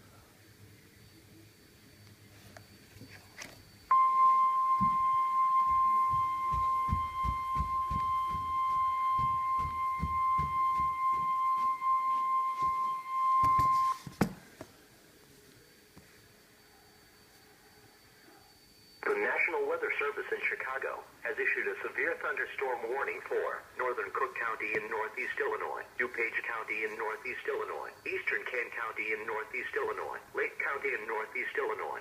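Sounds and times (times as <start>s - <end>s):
weather radio alarm tone: 3.9s - 14.0s, 19.0s - 32.0s
irregular low thumps: 4.7s - 12.0s.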